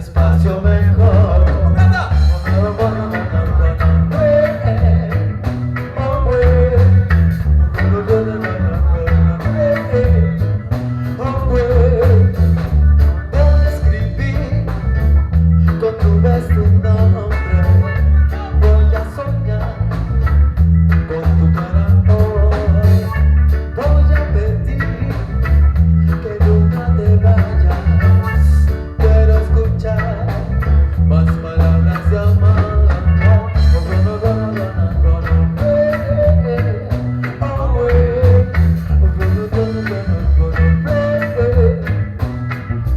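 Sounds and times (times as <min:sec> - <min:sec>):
person singing: 0:00.0 - 0:12.7, 0:15.6 - 0:20.2, 0:26.0 - 0:42.1
heavy bass guitar line: 0:00.0 - 0:42.9
reggae band playing: 0:00.0 - 0:42.9.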